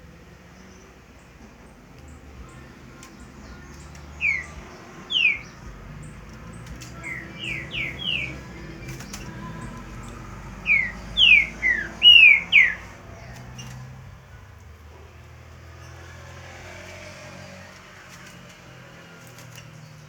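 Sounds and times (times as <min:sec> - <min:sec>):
bird whistled calls: 0:04.2 - 0:05.6, 0:07.0 - 0:09.3, 0:10.6 - 0:13.0.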